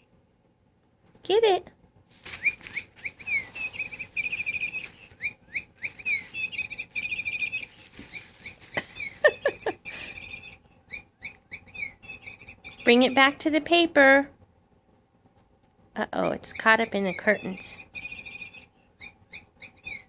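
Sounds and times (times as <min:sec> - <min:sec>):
electronic bird toy chirping: 0:02.4 - 0:13.6, 0:16.2 - 0:20.0.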